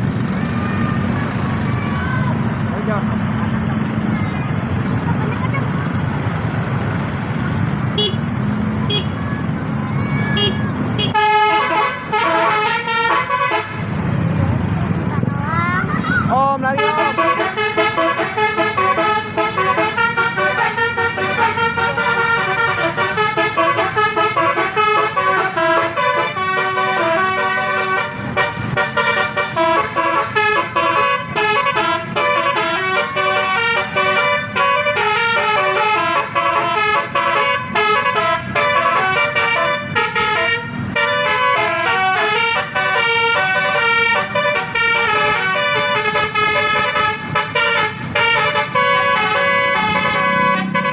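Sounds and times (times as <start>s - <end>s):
musical bus air horn melody: 7.9s - 9.2s, 10.4s - 14.3s, 16.7s - 50.9s.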